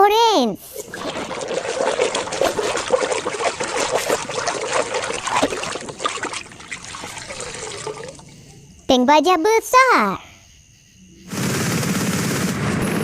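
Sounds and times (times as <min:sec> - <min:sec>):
water splashing over plastic toy: 0:00.7 - 0:08.2.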